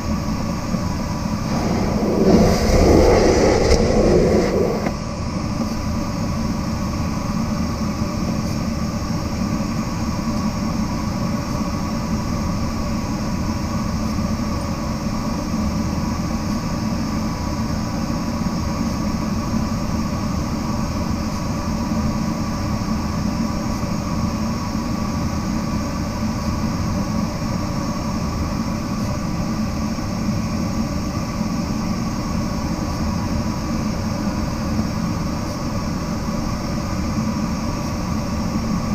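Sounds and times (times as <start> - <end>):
rushing airflow: 1.4 - 5.1.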